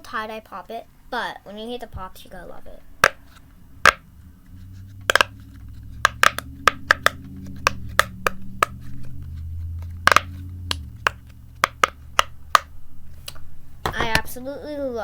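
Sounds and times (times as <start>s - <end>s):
pop-it fidget toy bubbles popping: 3.8s - 4.0s, 5.0s - 8.9s, 10.0s - 12.7s.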